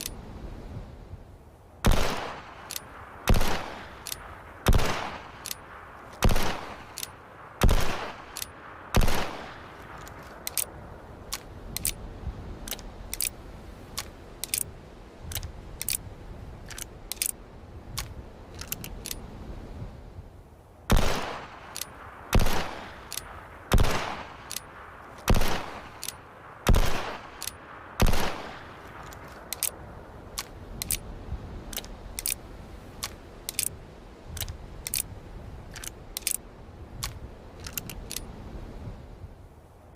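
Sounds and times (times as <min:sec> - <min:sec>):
small metallic clicks: 0:02.5 - 0:03.0, 0:04.0 - 0:04.3, 0:05.3 - 0:07.2, 0:08.3 - 0:08.6, 0:09.8 - 0:12.0, 0:12.6 - 0:14.7, 0:15.3 - 0:16.0, 0:16.6 - 0:19.3, 0:21.6 - 0:22.0, 0:22.7 - 0:23.4, 0:24.4 - 0:26.3, 0:27.2 - 0:27.6, 0:28.6 - 0:35.1, 0:35.7 - 0:36.4, 0:37.0 - 0:38.4.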